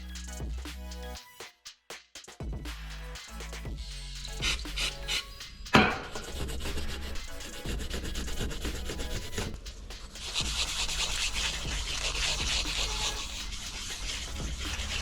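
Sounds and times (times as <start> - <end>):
scratchy rubbing on a surface: 4.4 - 15.0.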